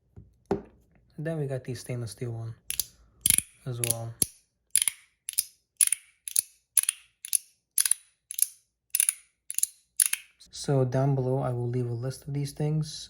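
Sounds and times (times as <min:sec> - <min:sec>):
metal fidget toy clicking: 0:02.7 - 0:10.5.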